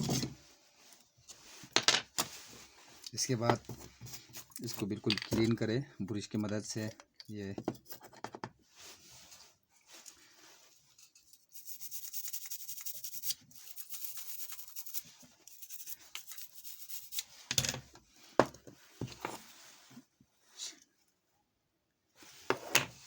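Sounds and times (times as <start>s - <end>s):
brush scrubbing circuit board: 11.4s - 17.3s.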